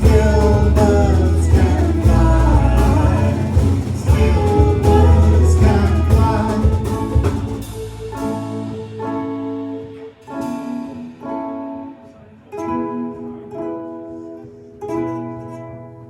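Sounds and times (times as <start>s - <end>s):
guitar playing slow chords: 0.0s - 16.0s
live band music: 0.0s - 16.0s.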